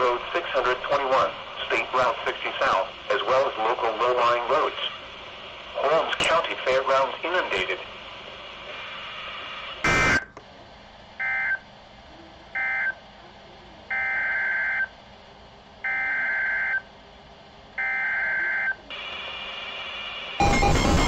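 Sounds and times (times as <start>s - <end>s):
digital data bursts: 20.4s - 21.0s.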